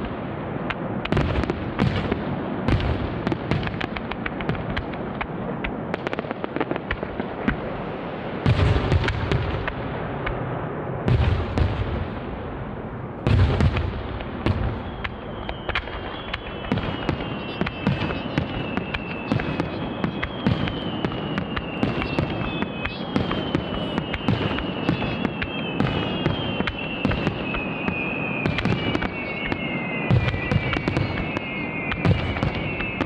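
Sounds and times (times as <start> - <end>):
fireworks booms: 0.0 - 33.0
fireworks crackling: 0.0 - 33.0
falling whistling tones: 11.8 - 33.0.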